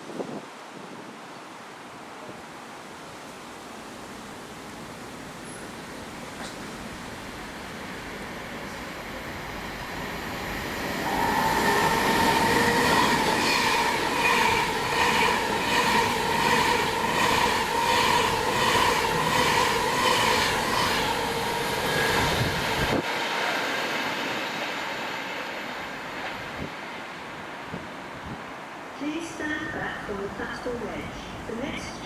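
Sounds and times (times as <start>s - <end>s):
electric train passing: 2.5s - 32.0s
train wheels clattering: 5.4s - 23.0s.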